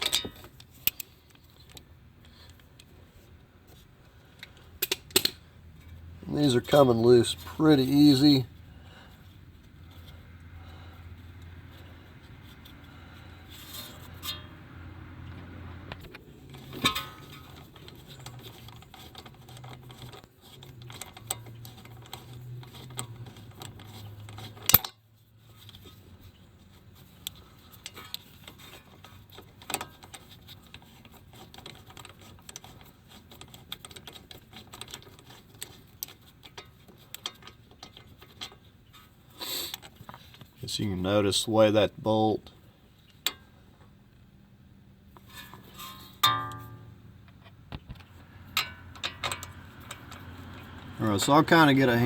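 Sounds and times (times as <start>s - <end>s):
metal tools clinking: 0.0s - 1.1s, 45.2s - 46.9s, 48.5s - 52.0s
low steady hum: 34.7s - 52.0s
sharp loud metal clank: 46.2s - 46.9s.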